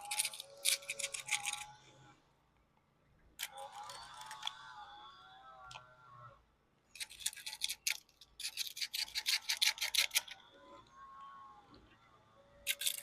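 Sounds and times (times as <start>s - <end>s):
razor blade scraping caulk: 0.0s - 1.8s, 7.0s - 10.4s, 12.6s - 13.0s.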